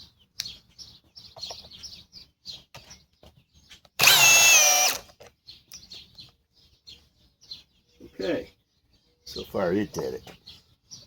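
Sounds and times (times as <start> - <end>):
birds chirping: 0.0 - 11.0
cordless drill motor whine: 4.0 - 5.2.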